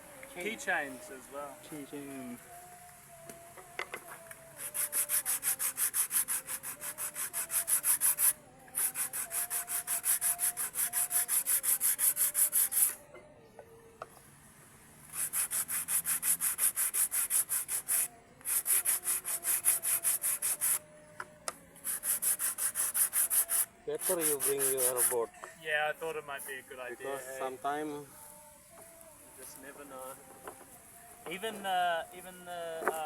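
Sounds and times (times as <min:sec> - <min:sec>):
sanding strokes: 0:04.3 - 0:13.0, 0:15.0 - 0:20.8, 0:21.8 - 0:25.3.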